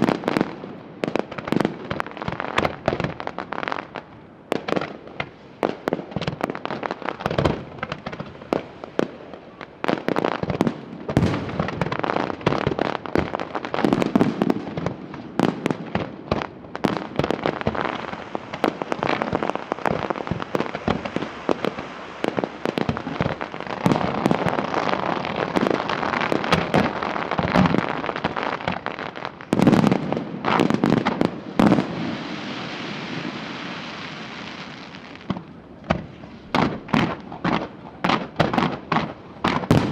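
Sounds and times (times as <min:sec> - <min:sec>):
fireworks crackling: 0:00.0 - 0:39.9
firework bangs: 0:04.5 - 0:39.9.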